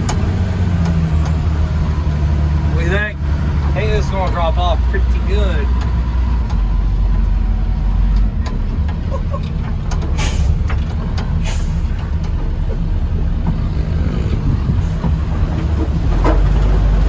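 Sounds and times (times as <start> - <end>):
diesel truck engine rumbling: 0.0 - 17.0
short air hisses: 10.2 - 10.6, 11.4 - 11.9.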